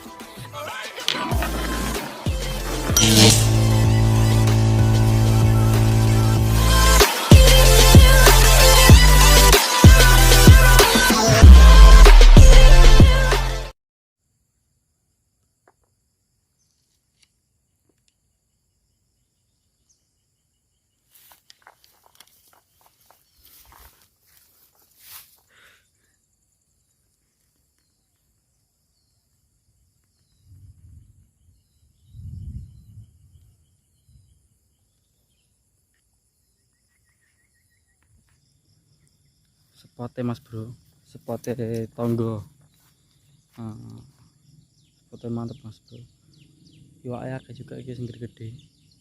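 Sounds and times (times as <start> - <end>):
high-pitched insect drone: 3.0 - 8.8
footsteps through vegetation: 21.0 - 25.8, 40.8 - 44.2.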